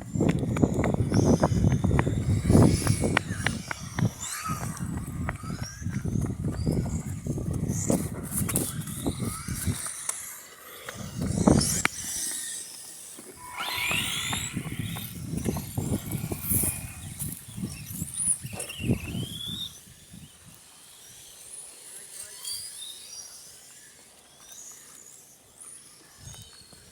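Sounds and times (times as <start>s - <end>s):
remote-control car motors whining: 0.0s - 26.9s.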